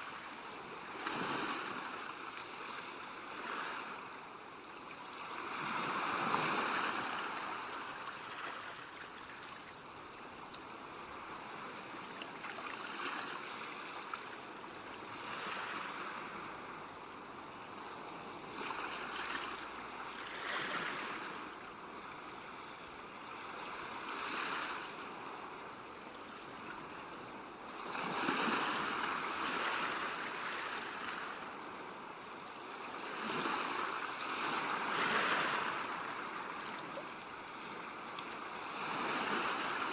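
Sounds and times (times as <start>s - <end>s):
ocean waves breaking: 33.0s - 36.7s.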